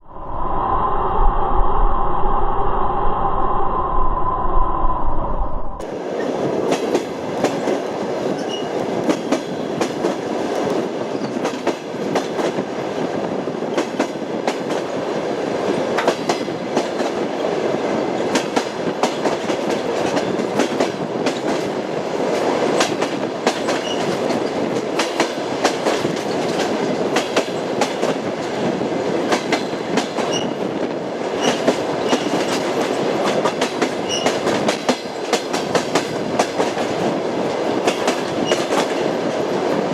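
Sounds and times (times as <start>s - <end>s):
railway carriage rumble: 5.7s - 39.9s
train wheels clattering: 6.2s - 13.0s, 15.7s - 17.5s, 18.2s - 28.6s, 29.2s - 30.7s, 31.3s - 39.4s.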